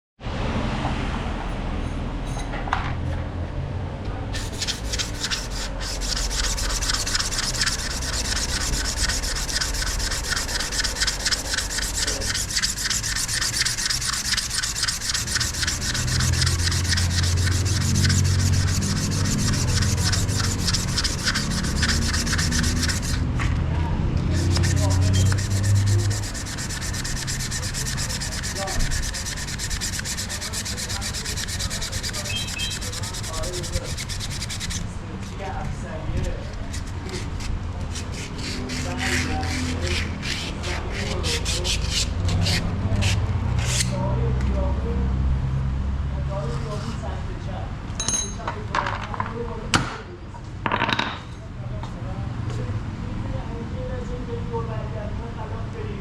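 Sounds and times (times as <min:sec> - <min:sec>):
fast scrubbing strokes: 0:04.3 - 0:23.3, 0:24.2 - 0:34.9, 0:36.8 - 0:43.9.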